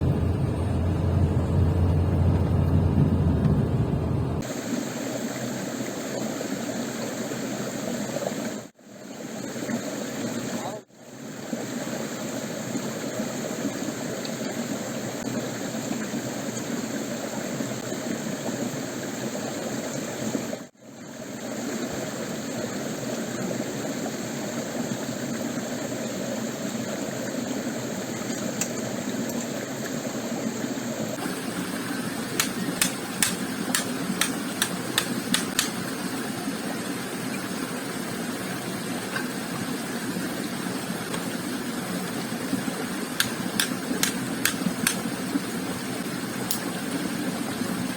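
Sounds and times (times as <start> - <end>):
stream water over stones: 4.4 - 47.9
rapid sharp clicks: 31.2 - 35.9, 43.2 - 45.1.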